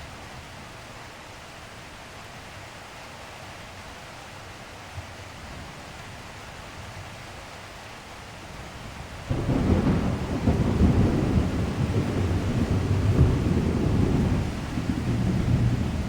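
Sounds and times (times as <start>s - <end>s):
steady rain falling: 0.0s - 16.0s
low thunder rumble: 9.2s - 16.0s.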